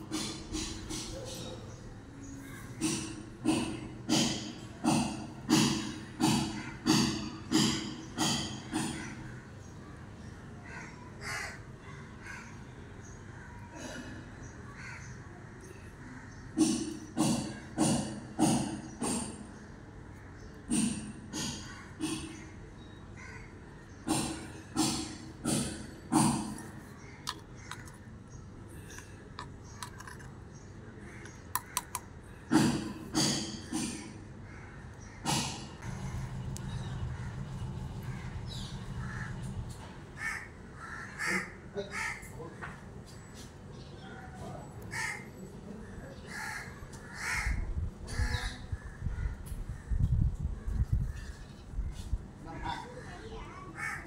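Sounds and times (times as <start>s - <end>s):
crows cawing: 2.3s - 9.6s, 10.6s - 15.3s, 16.0s - 22.6s, 23.2s - 28.0s, 30.9s - 42.8s, 44.9s - 51.4s, 52.6s - 54.0s
low rumble: 35.8s - 39.8s.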